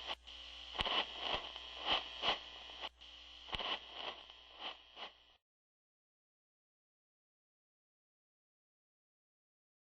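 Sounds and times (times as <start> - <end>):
radio static hiss: 0.0 - 5.4
soft crackling: 0.0 - 5.4.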